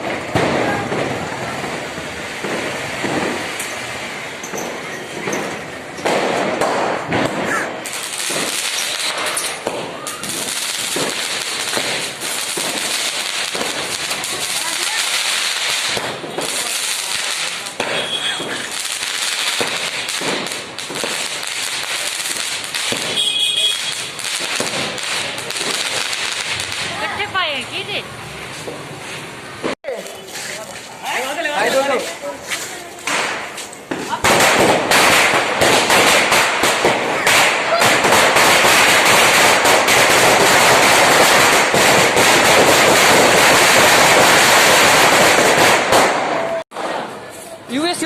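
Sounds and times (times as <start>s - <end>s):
firecrackers crackling and banging: 0.0s - 48.0s
firework whistle: 17.8s - 18.8s, 22.9s - 24.2s.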